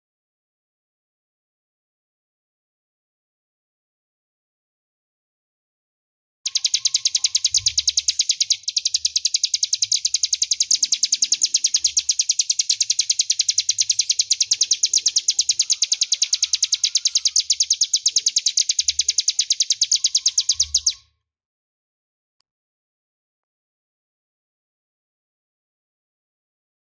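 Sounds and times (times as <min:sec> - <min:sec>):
bird high-pitched trill: 0:06.5 - 0:21.1.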